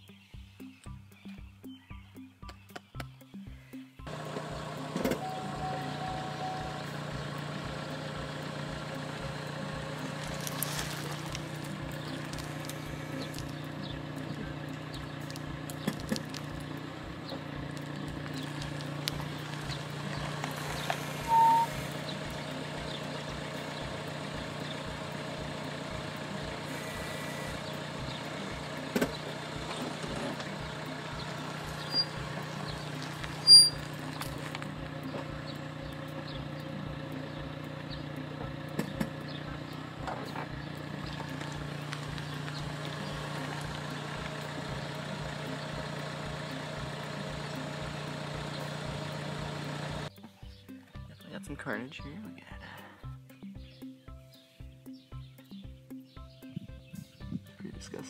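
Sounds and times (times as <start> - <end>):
car engine running: 3.6 - 53.8
brief high tone: 5.1 - 7.1, 21.2 - 21.9.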